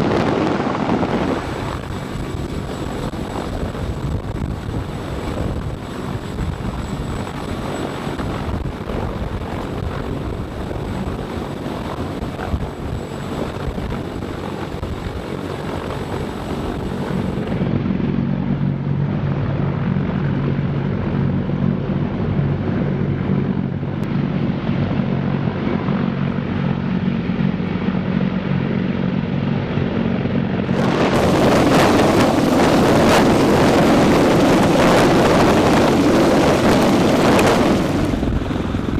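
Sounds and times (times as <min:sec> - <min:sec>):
helicopter rotor and engine noise: 0:00.0 - 0:38.9.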